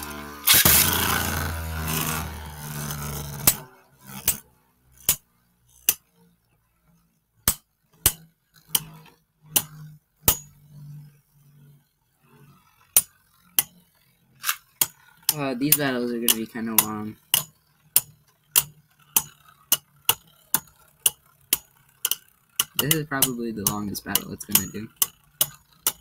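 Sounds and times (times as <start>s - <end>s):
low hum of spinning tops: 0.0s - 26.0s
spinning tops clashing clicks: 0.4s - 4.4s, 14.4s - 26.0s.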